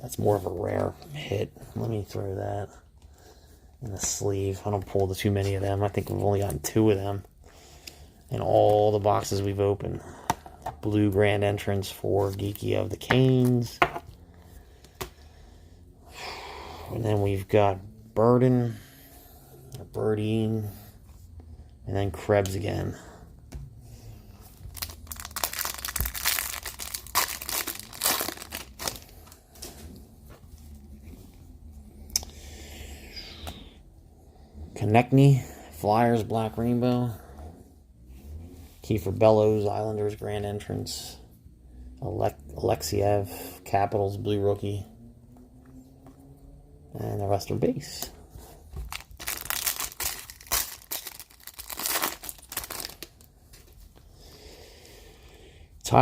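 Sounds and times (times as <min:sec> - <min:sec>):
foil pack crinkling and tearing: 0:24.6 - 0:29.4, 0:48.8 - 0:53.3.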